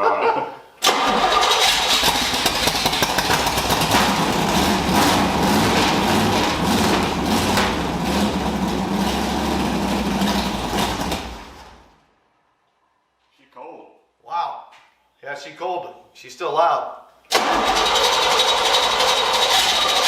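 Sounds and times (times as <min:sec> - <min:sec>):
loud car engine running: 0:01.0 - 0:11.9.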